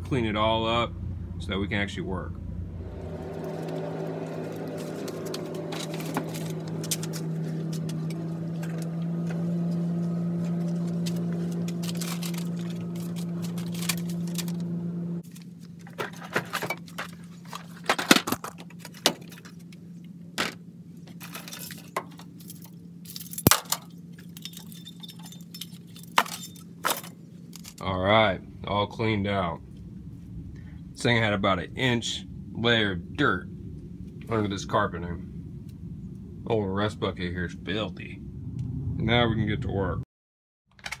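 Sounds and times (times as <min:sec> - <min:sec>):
vacuum motor running: 0:02.4 - 0:15.2
debris clinking and rattling: 0:03.0 - 0:08.9, 0:11.0 - 0:14.6, 0:15.2 - 0:19.6, 0:20.4 - 0:27.8.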